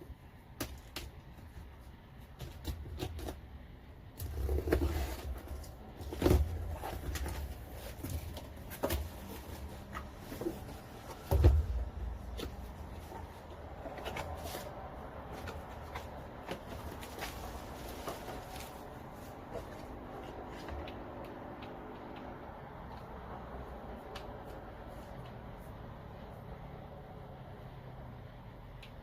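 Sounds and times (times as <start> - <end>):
cardboard box rustling and clicking: 4.2 - 18.9
dull thumps: 6.0 - 14.4.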